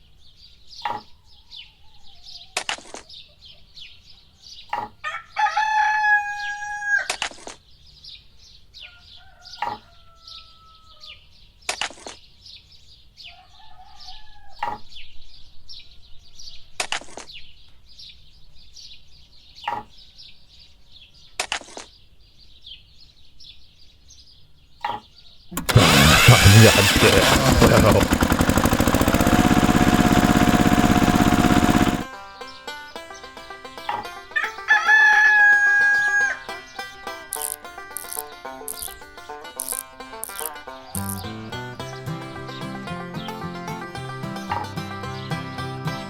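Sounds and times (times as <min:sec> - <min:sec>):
rooster crowing: 0:05.0 - 0:07.2, 0:08.8 - 0:11.1, 0:13.3 - 0:14.6, 0:34.6 - 0:36.4
high bird chirping: 0:39.6 - 0:46.0.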